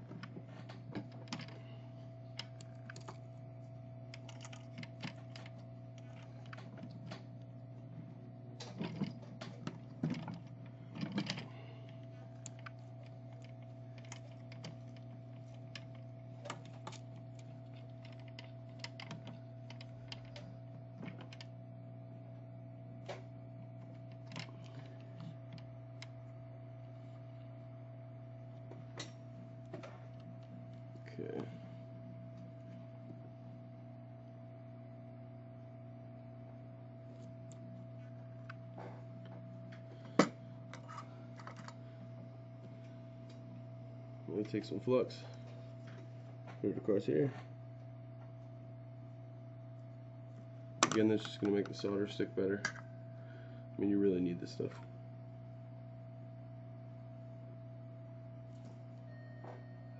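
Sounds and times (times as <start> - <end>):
electrical hum: 0.0 - 59.9.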